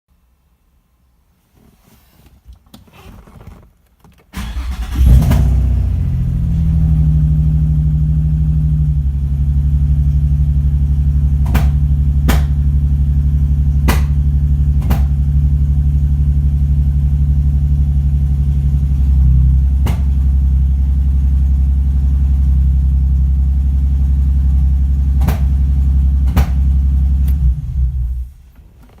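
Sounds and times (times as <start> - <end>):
car engine cranking and idling: 2.6 - 29.0
sharp engine pops: 13.9 - 14.2.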